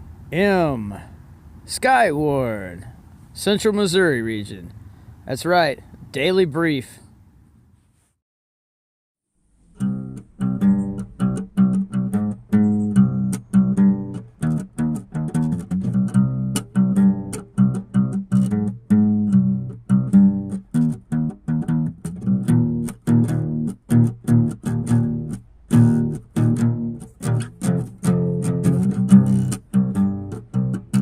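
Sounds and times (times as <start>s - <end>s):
guitar plucking quick notes: 9.8s - 31.0s.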